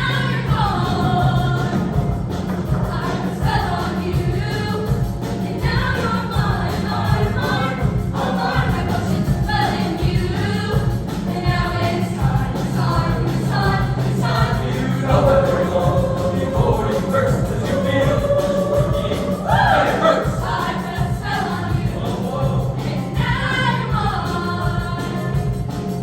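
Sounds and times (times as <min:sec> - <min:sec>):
girls' choir singing: 0:00.0 - 0:26.0
low instrumental accompaniment: 0:00.0 - 0:26.0.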